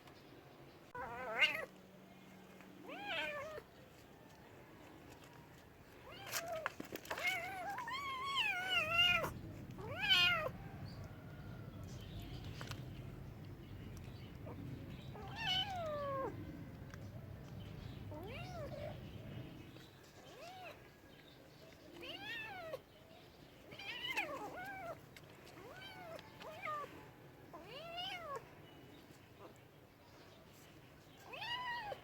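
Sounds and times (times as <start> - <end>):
cat meowing: 1.0 - 1.7, 2.8 - 3.6, 6.1 - 10.6, 14.4 - 16.8, 18.0 - 19.0, 22.0 - 22.8, 23.7 - 25.0, 27.6 - 28.4, 31.2 - 32.0.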